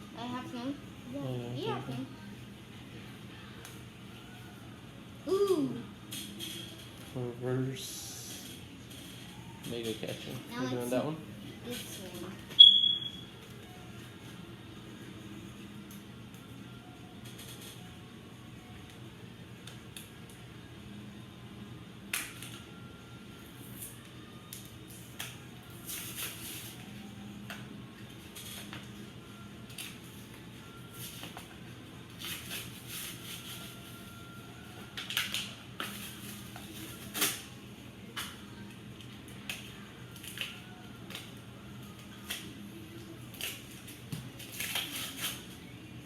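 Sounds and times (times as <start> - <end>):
faint background music: 0.0 - 46.0.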